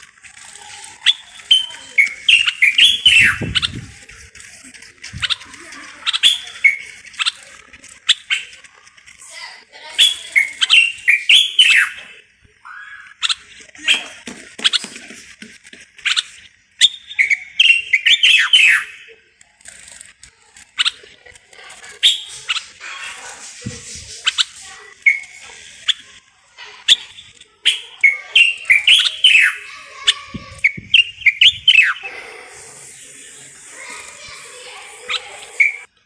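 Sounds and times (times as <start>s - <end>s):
bird whistled song: 0.4s - 4.1s, 6.0s - 8.6s, 9.9s - 14.1s, 16.1s - 19.1s, 21.8s - 22.7s, 23.7s - 26.1s, 26.8s - 32.1s, 32.9s - 35.9s.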